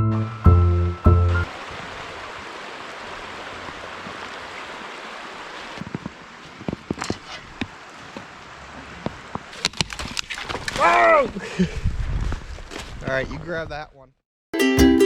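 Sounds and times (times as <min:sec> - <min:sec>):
sharp crunches and snaps: 0:09.5 - 0:11.0.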